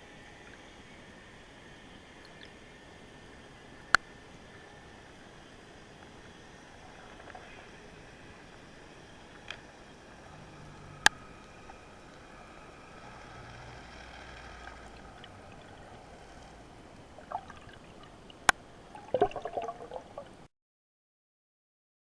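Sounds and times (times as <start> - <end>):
faint hum: 0.0 - 20.5
underwater hiss: 4.3 - 20.4.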